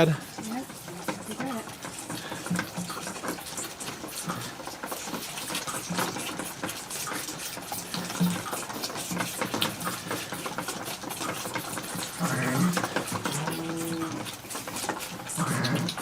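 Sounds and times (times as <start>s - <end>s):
goat kids sucking bottles: 0.0s - 16.0s.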